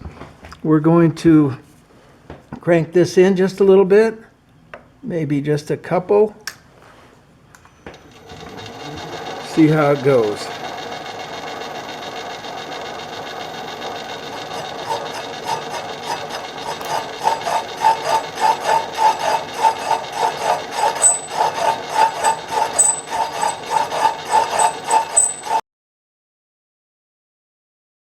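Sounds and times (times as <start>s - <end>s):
machine tool running: 8.0s - 25.6s
cutter scraping rhythmically: 8.2s - 25.6s.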